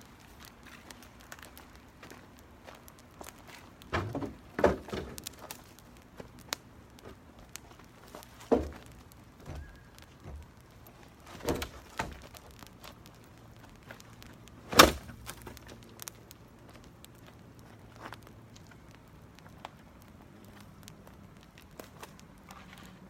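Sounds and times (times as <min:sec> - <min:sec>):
small fire crackles: 0:00.0 - 0:23.0
sticks knocking and snapping: 0:02.9 - 0:18.8.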